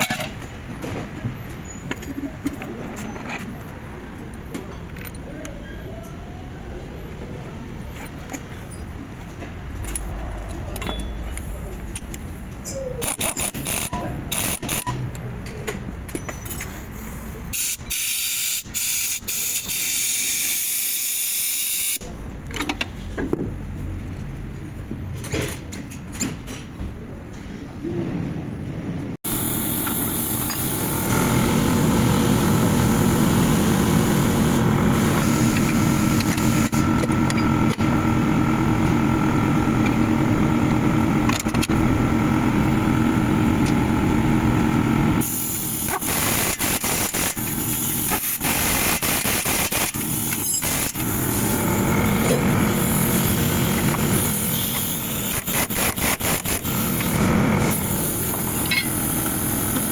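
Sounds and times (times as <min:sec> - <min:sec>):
car engine and road noise: 0:28.8 - 0:59.9.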